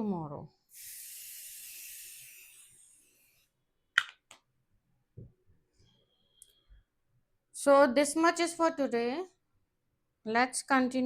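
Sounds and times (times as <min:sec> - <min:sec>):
aerosol spray hissing: 0:00.7 - 0:03.3.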